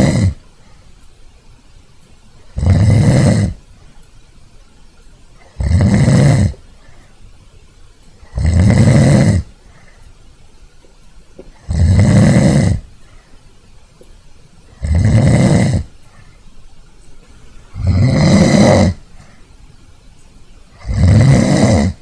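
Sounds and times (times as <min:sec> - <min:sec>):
person snoring: 0:00.0 - 0:00.4, 0:02.5 - 0:03.6, 0:05.4 - 0:06.6, 0:08.2 - 0:09.6, 0:11.6 - 0:12.9, 0:14.7 - 0:16.0, 0:17.7 - 0:19.1, 0:20.7 - 0:22.0.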